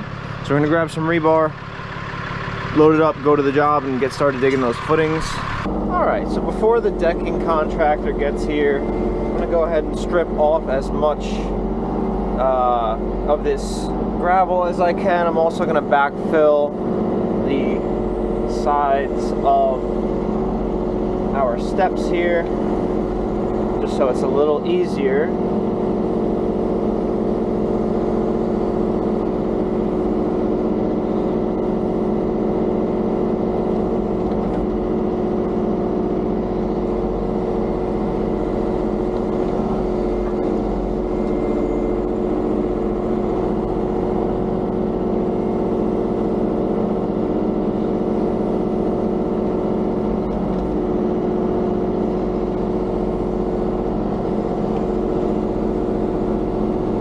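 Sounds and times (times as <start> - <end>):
diesel engine of excavator running: 0.0 - 57.0.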